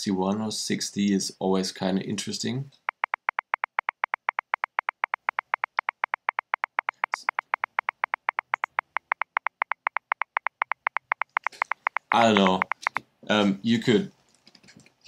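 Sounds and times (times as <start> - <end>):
short electronic ticks: 2.9 - 13.0.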